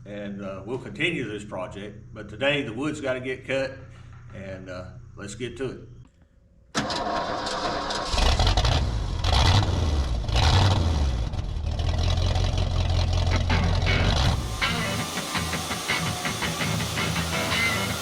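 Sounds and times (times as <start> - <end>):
engine deep rumble: 8.2 - 15.0.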